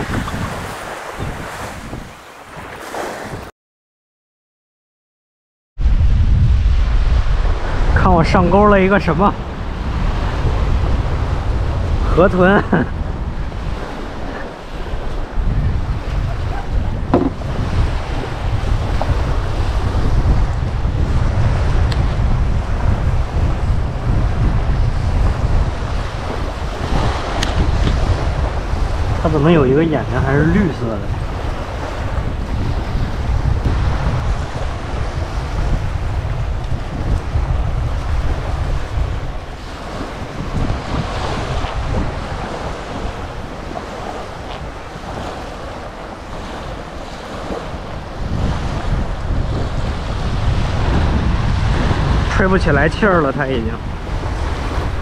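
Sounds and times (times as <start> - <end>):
ocean surf washing on beach: 0.0 - 3.5, 5.8 - 55.0
wind buffeting microphone: 0.0 - 3.5, 5.8 - 55.0.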